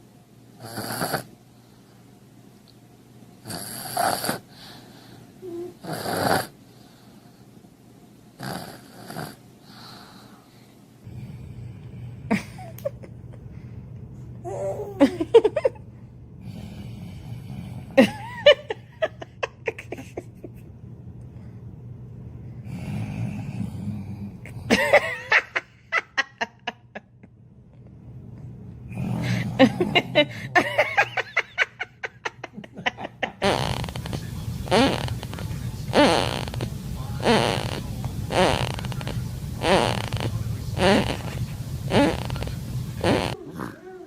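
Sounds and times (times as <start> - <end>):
baby snoring: 0.6 - 1.3, 3.4 - 4.5, 5.4 - 6.6, 8.4 - 9.4, 33.4 - 44.0
person laughing: 12.3 - 13.5, 14.5 - 15.9, 18.0 - 20.7, 24.7 - 27.2, 29.2 - 33.8.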